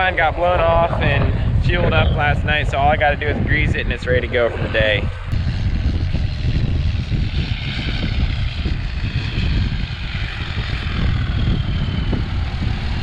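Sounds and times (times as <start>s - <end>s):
vehicle engine running: 4.8s - 13.0s.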